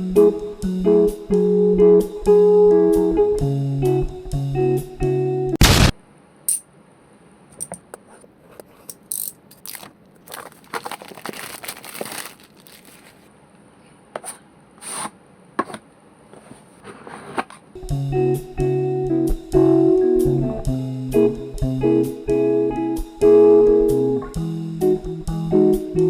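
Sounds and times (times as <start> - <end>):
packaging clicks and scrapes: 8.5 - 13.3
packaging rustling and crinkling: 9.5 - 13.3.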